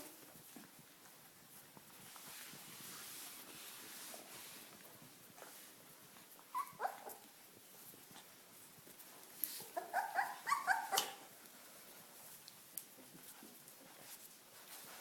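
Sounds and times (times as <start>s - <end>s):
puppy yipping: 6.5s - 7.3s, 9.6s - 11.3s.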